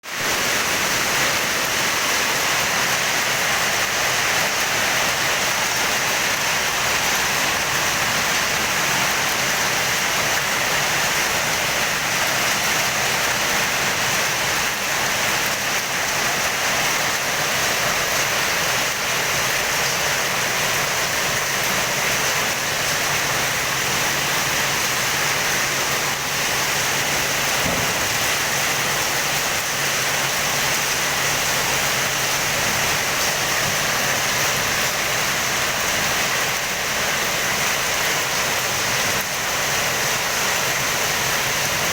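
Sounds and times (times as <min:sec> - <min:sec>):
steady rainfall: 0:00.0 - 0:41.9.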